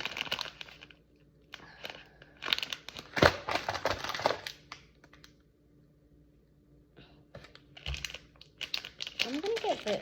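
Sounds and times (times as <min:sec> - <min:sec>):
snack packaging crinkling: 0:00.0 - 0:05.5, 0:07.5 - 0:10.0.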